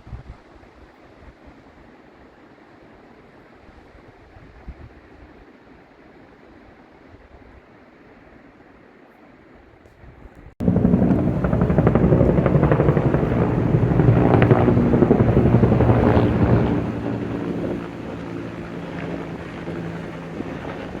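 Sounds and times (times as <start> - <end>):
engine running steadily: 10.6 - 21.0
faint rushing noise: 10.6 - 21.0.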